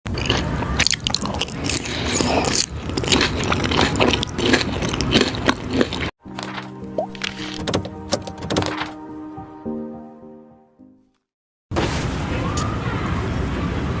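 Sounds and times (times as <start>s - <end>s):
crunchy eating bites: 0.1s - 7.6s.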